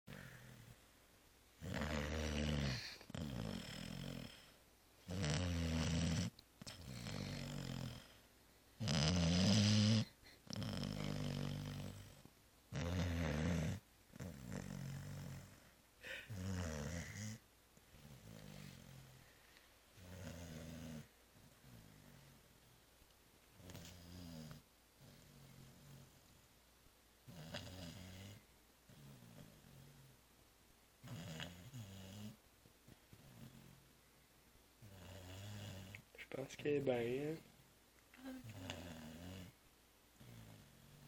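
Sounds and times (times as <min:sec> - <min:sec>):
dog snoring: 0:00.1 - 0:00.8, 0:01.6 - 0:08.2, 0:08.8 - 0:19.3, 0:20.0 - 0:22.6, 0:23.6 - 0:26.4, 0:27.2 - 0:30.2, 0:31.0 - 0:32.4, 0:34.8 - 0:36.1, 0:38.3 - 0:39.6, 0:40.2 - 0:41.0.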